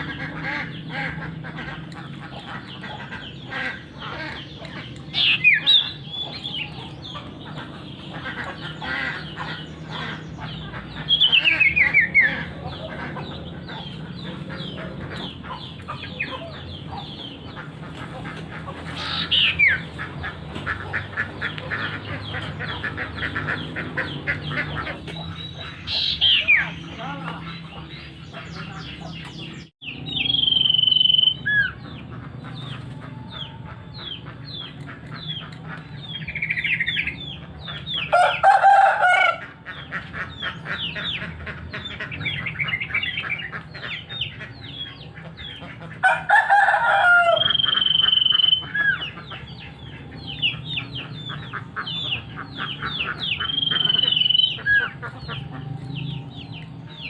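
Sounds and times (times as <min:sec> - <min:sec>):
bird whistling song: 0:29.8 - 0:31.8, 0:47.4 - 0:49.0, 0:53.3 - 0:54.9
rooster crowing: 0:38.1 - 0:39.4, 0:46.0 - 0:48.4.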